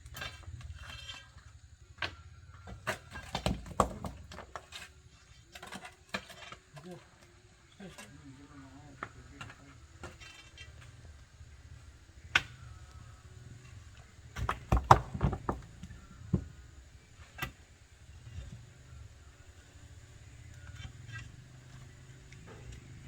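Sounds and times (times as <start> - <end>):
low steady hum: 0.0 - 23.0
sharp knocks and clatters: 2.0 - 4.9, 13.6 - 16.6.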